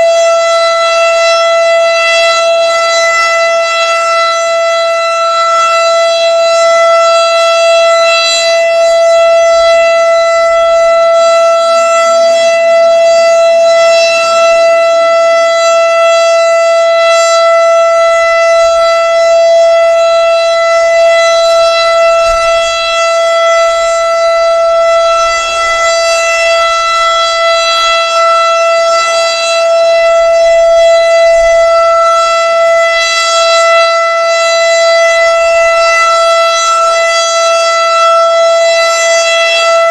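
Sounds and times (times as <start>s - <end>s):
siren steady high tone: 0.0s - 39.9s
wind buffeting microphone: 20.6s - 27.5s.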